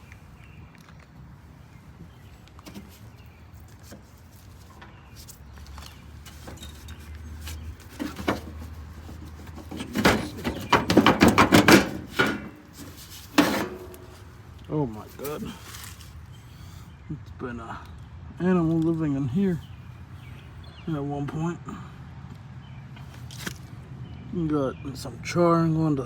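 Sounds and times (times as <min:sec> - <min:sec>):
sheet metal clattering and knocking: 0:07.9 - 0:14.2.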